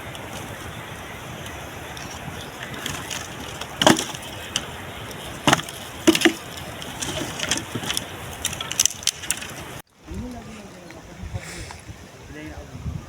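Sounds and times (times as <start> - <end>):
steady hiss: 0.0 - 12.8
sharp wooden knocks: 2.4 - 9.6.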